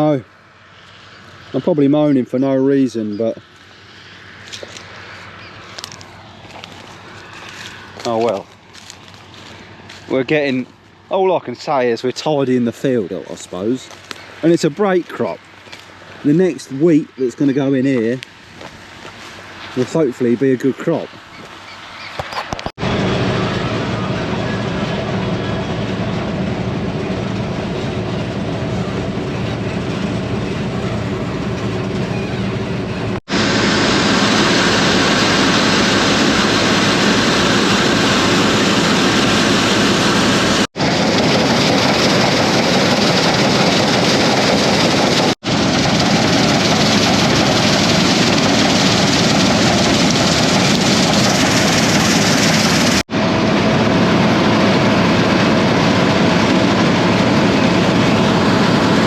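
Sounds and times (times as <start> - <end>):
combine harvester running: 0.0 - 59.0.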